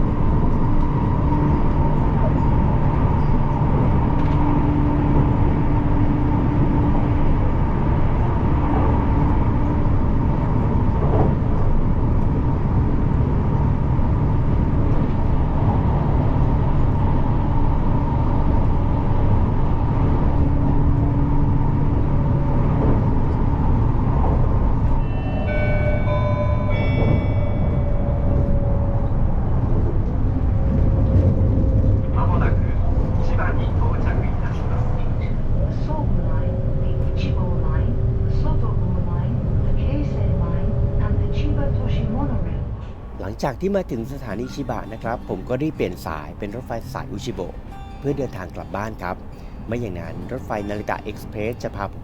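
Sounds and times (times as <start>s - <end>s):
train wheels rumbling: 0.0s - 44.1s
electronic chime: 25.0s - 29.1s.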